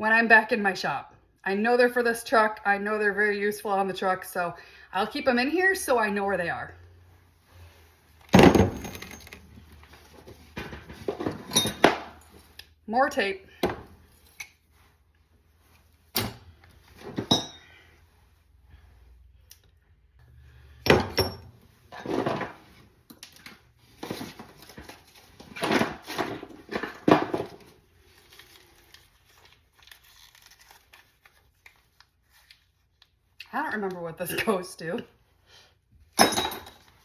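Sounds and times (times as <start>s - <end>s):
metal tools clinking: 8.5s - 9.6s, 11.2s - 12.5s
packaging rustling and crinkling: 27.6s - 33.0s.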